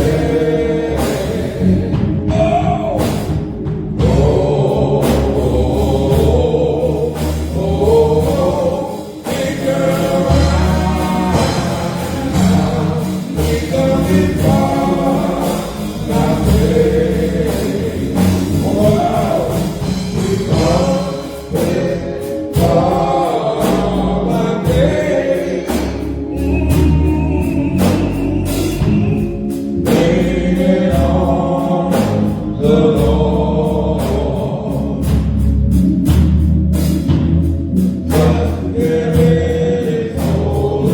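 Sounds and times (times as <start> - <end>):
choir singing: 0.0 - 35.7, 37.8 - 40.9
band with bass and drums: 0.0 - 40.9.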